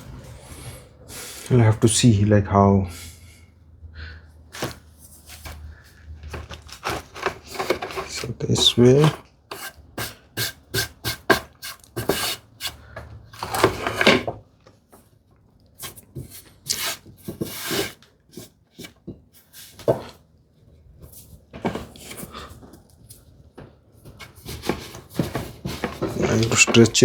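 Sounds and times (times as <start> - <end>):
wood rubbing and scraping: 4.6 - 12.8, 13.4 - 14.4, 24.1 - 27.0.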